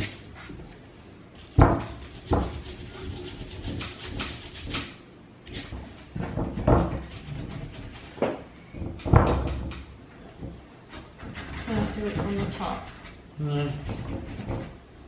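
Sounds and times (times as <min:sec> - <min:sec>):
brush scrubbing suede: 0:01.4 - 0:04.9, 0:06.9 - 0:08.2.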